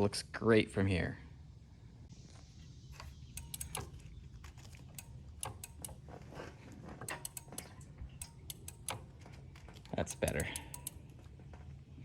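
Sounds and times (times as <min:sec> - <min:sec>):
clicks and light knocks: 0:03.0 - 0:11.8.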